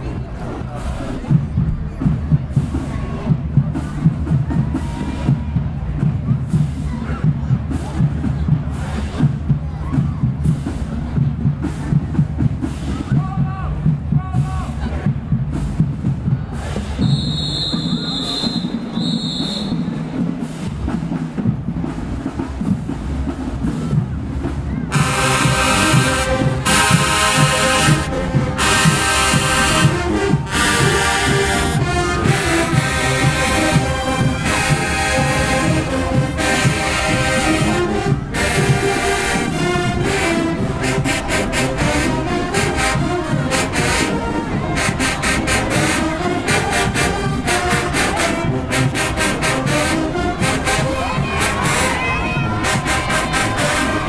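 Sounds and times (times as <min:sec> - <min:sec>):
marching drumline cadence: 0:00.0 - 0:54.0
percussion beat: 0:00.2 - 0:54.0
brass section playing: 0:24.9 - 0:54.0.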